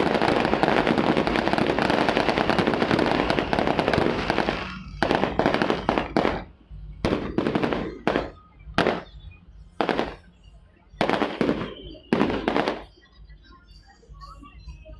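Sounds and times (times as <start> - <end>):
fireworks crackling bangs: 0.0 - 10.4, 11.0 - 13.0.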